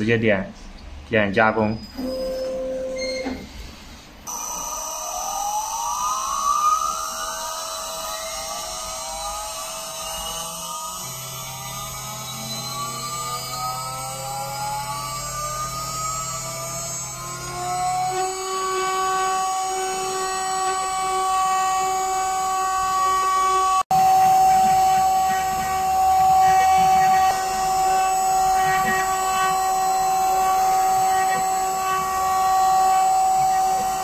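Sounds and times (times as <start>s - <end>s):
engraving spindle motor whine: 4.3s - 34.0s
low hum: 7.8s - 34.0s.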